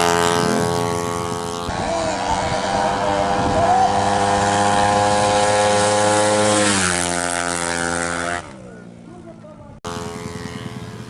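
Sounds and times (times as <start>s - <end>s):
scooter engine at full throttle: 0.0s - 11.0s.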